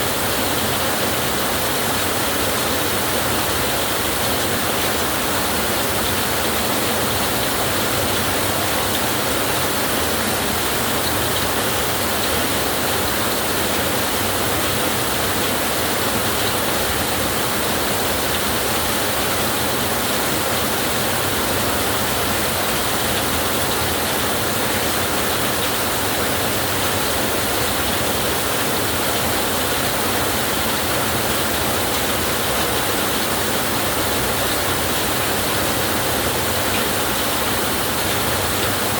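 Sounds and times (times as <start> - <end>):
heavy rain on a tin roof: 0.0 - 38.9.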